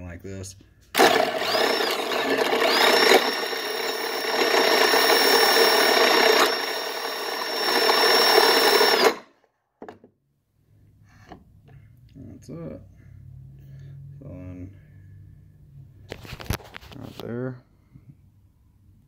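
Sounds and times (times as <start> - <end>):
power drill grinding metal: 1.0 - 9.3.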